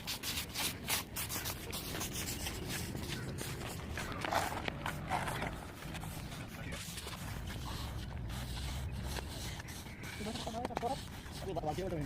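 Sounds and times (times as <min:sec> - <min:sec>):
rustling and scraping: 0:00.0 - 0:12.0.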